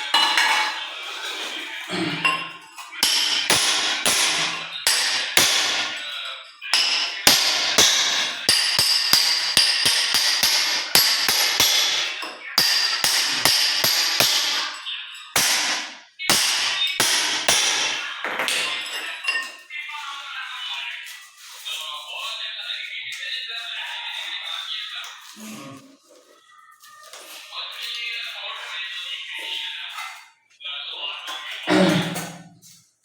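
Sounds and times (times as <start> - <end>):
hammer striking metal chisel: 3.0 - 6.0, 6.7 - 14.8, 15.4 - 19.0.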